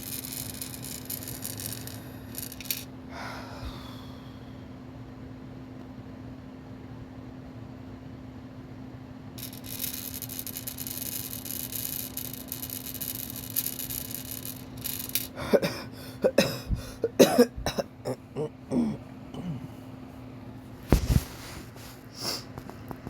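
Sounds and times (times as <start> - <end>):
woman breathing in: 3.1 - 4.6
woman coughing: 15.4 - 19.7.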